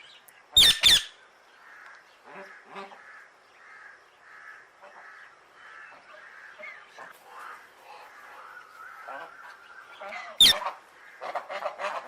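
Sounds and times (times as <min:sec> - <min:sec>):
parrot squawking: 0:00.6 - 0:01.2, 0:10.0 - 0:12.0.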